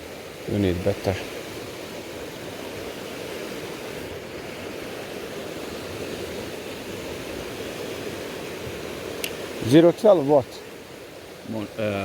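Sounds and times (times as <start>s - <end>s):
fast-flowing river water: 0.0s - 12.0s.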